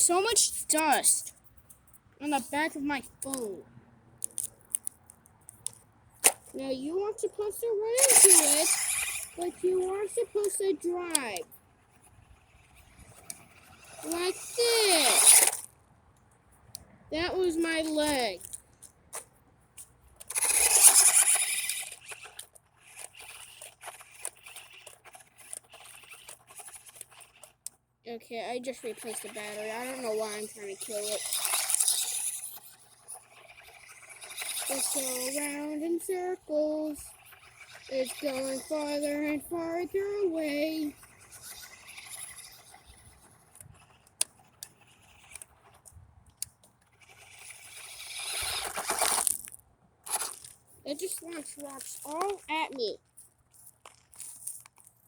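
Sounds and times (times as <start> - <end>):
sharp ticks: 0.0 - 54.9
rc car tyres scraping gravel: 0.0 - 55.0.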